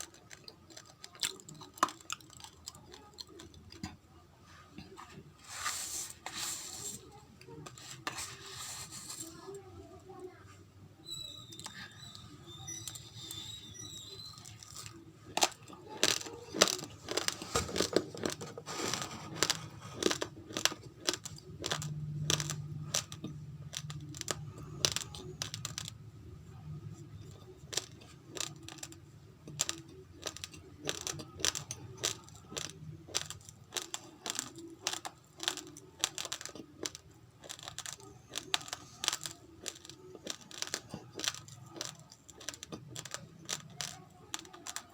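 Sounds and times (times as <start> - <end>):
rice grains crunching: 5.4 - 9.5, 14.3 - 25.9, 27.6 - 44.9.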